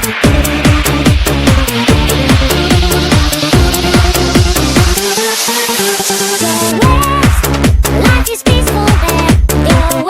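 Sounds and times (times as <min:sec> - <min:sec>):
falling pitch sweeps: 0:00.0 - 0:06.8
electronic dance music: 0:00.0 - 0:10.0.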